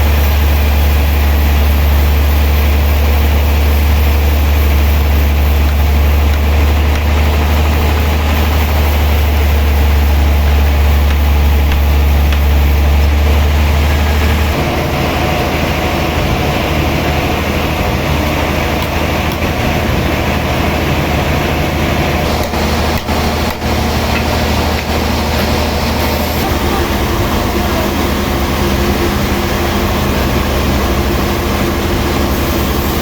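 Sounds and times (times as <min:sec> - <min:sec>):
sawmill machinery running: 0:00.0 - 0:33.0.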